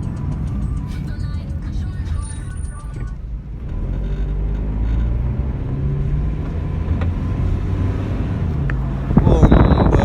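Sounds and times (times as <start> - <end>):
car engine running: 0.0 - 10.0
road noise: 0.0 - 10.0.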